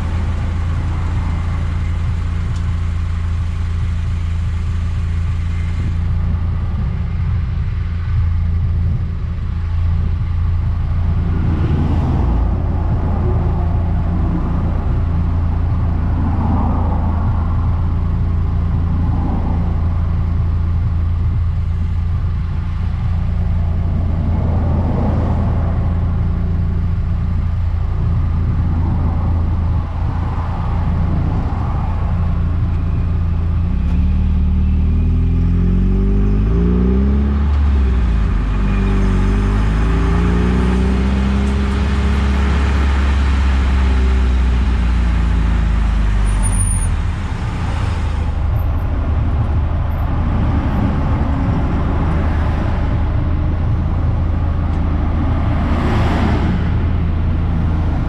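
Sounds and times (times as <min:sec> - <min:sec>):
rushing noise: 0:00.0 - 0:34.2, 0:37.4 - 0:58.0
car engine running: 0:00.0 - 0:58.0.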